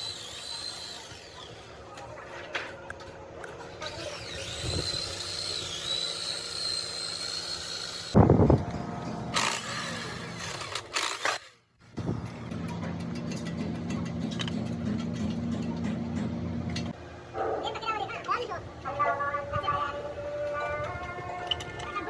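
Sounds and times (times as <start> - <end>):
power tool high whine: 0.0 - 1.6, 4.0 - 8.2.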